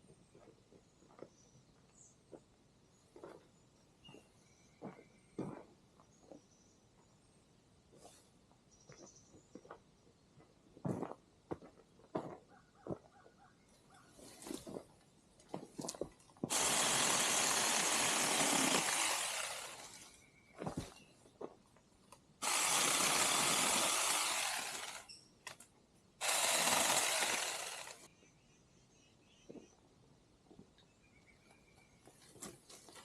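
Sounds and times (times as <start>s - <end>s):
small chainsaw running: 16.5s - 20.1s, 22.4s - 25.1s, 26.2s - 28.1s.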